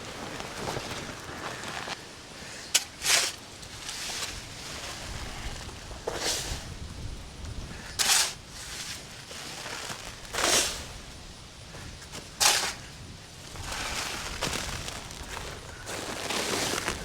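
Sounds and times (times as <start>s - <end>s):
fabric flapping in wind: 0.0s - 2.3s, 13.0s - 17.0s.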